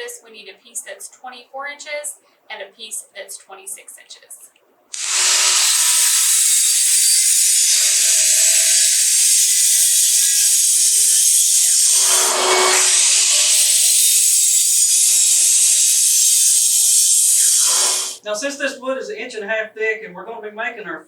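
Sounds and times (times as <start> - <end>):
power saw cutting wood: 4.9 - 18.2.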